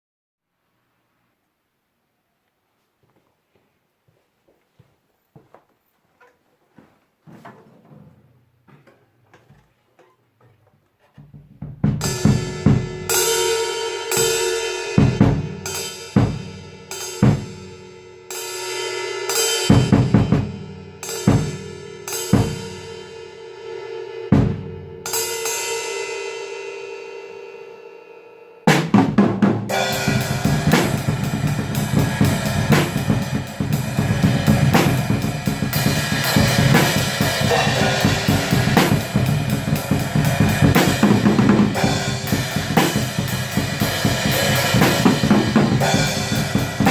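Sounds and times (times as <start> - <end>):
slow drum hits: 28.7 - 46.9
black metal band playing: 29.1 - 46.9
cymbal crashes: 29.7 - 46.9.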